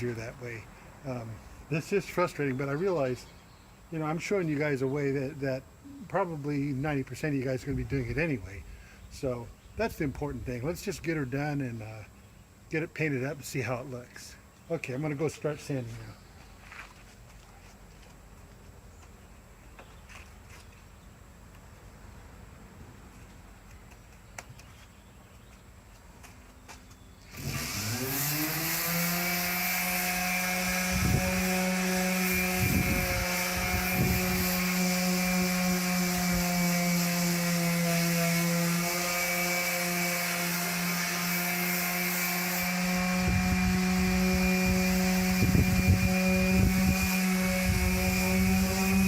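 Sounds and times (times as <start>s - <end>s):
sanding pad scuffing metal: 15.3s - 21.0s
electric sander humming: 27.2s - 49.0s.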